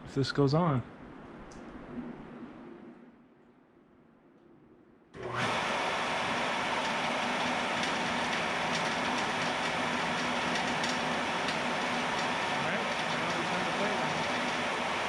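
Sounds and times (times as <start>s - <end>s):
electric sawmill motor running: 5.2s - 15.0s.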